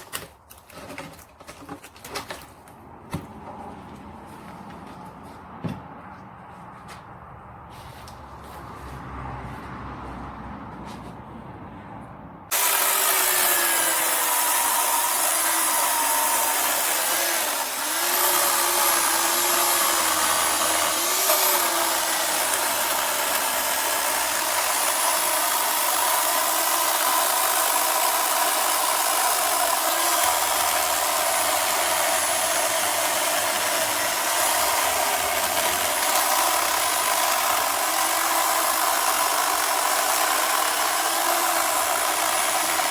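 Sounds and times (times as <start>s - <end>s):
electric chainsaw motor whine: 12.5s - 42.9s.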